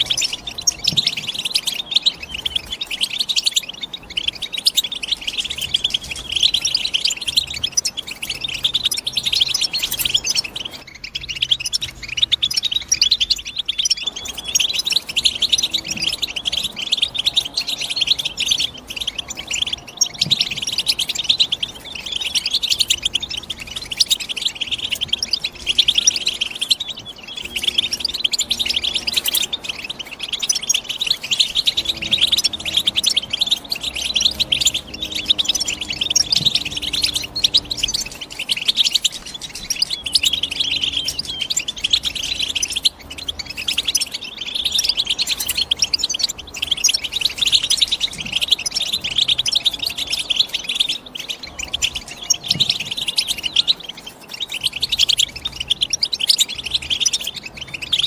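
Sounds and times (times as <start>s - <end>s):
bird twittering and trilling: 0.0s - 58.0s.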